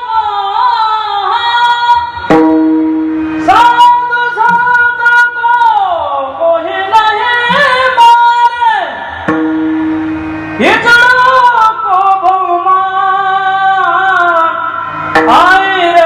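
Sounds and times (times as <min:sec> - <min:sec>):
steady instrumental drone: 0:02.3 - 0:04.0, 0:09.2 - 0:16.0
man singing devotional song: 0:03.4 - 0:09.2, 0:10.6 - 0:16.0.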